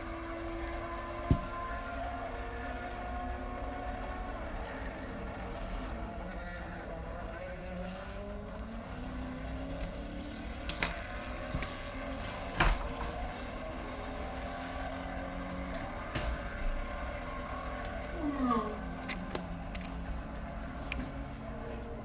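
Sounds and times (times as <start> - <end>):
race car engines: 0.0 - 22.0
sharp clicks: 19.0 - 21.1.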